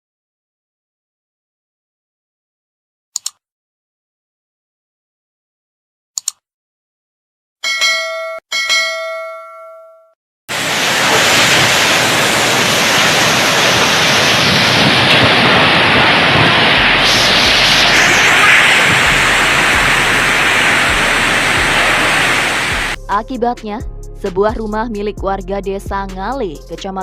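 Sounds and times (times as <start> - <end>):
heavy rain: 10.5 - 23.0
strong wind: 10.5 - 23.0.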